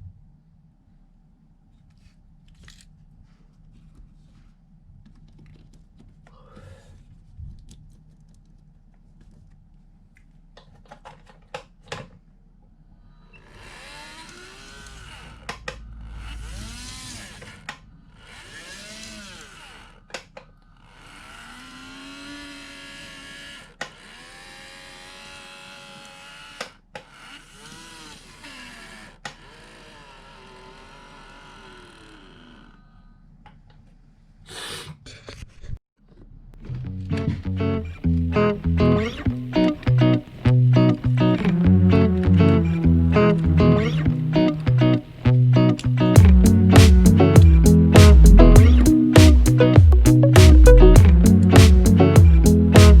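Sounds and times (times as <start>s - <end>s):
small electric motor whirring: 13.4s - 20.0s, 20.8s - 32.7s.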